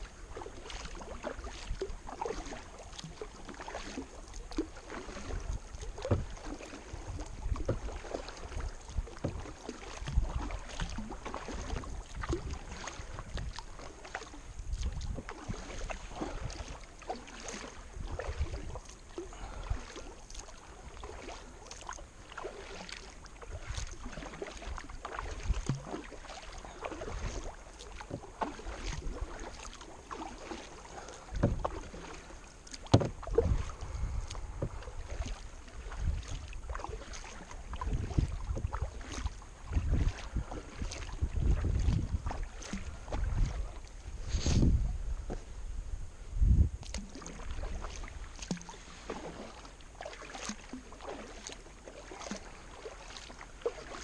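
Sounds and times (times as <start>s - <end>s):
paddle strokes splashing in water: 0.0s - 54.0s
wind buffeting microphone: 14.6s - 16.6s, 33.0s - 35.2s, 37.7s - 39.0s, 39.6s - 46.9s.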